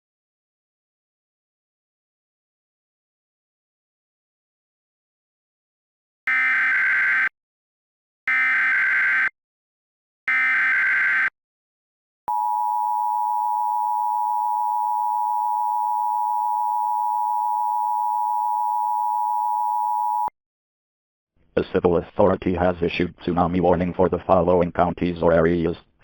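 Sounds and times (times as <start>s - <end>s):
two-tone attention signal: 12.3s - 20.3s.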